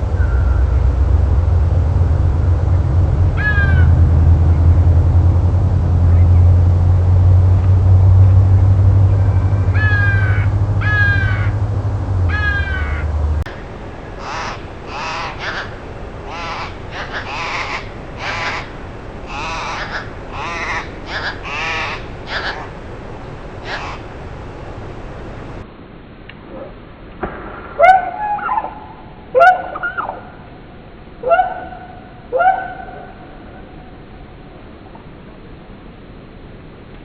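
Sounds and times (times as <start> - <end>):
bird calls: 0.0 - 0.9, 9.0 - 11.6, 12.3 - 13.1, 14.0 - 25.6
low steady hum: 0.0 - 37.0.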